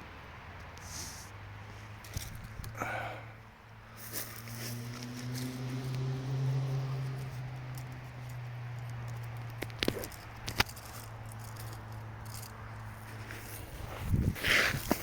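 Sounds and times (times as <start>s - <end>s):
ratchet hardware clicking and rattling: 7.0s - 13.8s.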